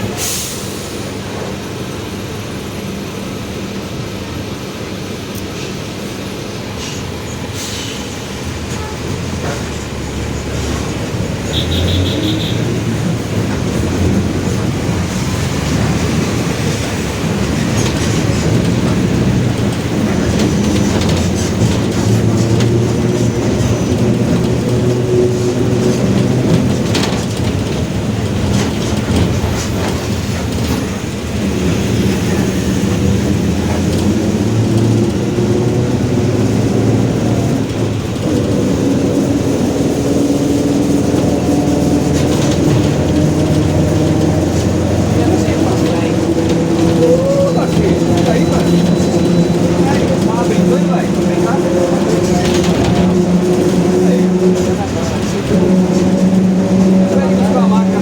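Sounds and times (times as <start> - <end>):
bus diesel engine running: 0.0 - 58.0
bodywork rattles and clicks: 10.5 - 31.8, 32.7 - 58.0
droning growl from differential: 31.9 - 58.0.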